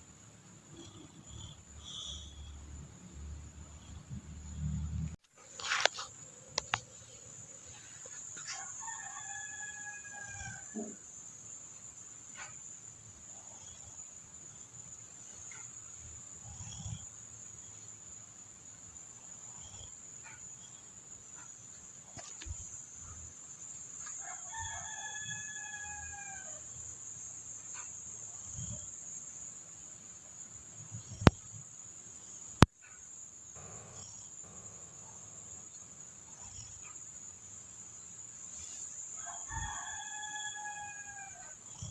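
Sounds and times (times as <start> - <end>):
rooster crowing: 8.5 - 11.0, 24.2 - 26.6, 39.2 - 41.6
high-pitched hiss: 21.7 - 41.9.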